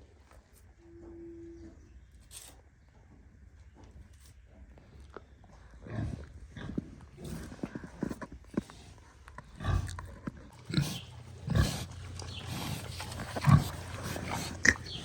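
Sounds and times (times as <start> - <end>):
pigs grunting: 5.8 - 15.0.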